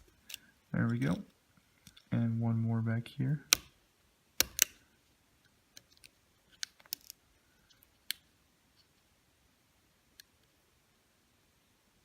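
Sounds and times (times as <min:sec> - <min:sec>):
plastic pry tool clicking: 0:04.4 - 0:04.8.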